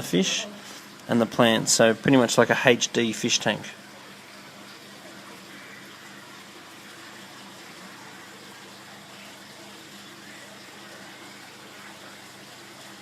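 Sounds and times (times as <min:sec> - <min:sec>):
small waterfall splashing: 0:00.0 - 0:13.0.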